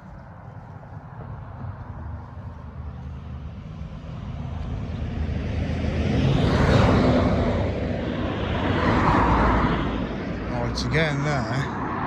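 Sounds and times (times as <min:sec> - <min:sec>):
car passing: 0:00.0 - 0:12.0.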